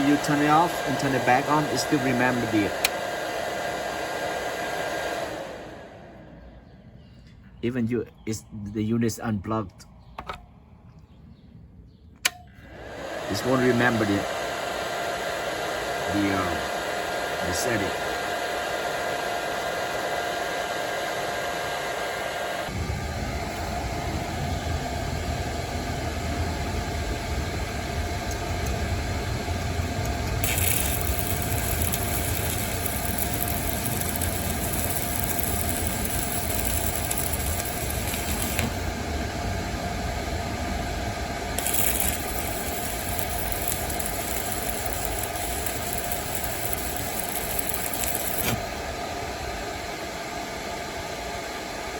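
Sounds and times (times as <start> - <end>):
cooling fan whining: 0.0 - 51.9
low rumbling noise: 22.7 - 49.7
bright hiss: 30.4 - 38.9, 41.6 - 48.8.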